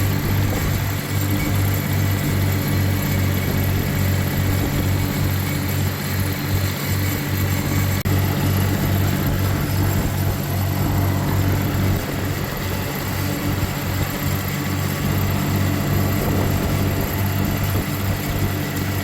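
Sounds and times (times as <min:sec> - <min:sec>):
tractor engine running under load: 0:00.0 - 0:19.0.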